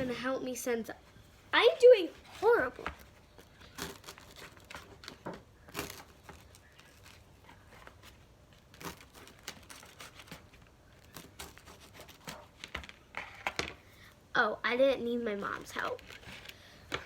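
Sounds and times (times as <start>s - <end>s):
toast crust cracking: 3.4s - 7.3s, 8.6s - 13.1s.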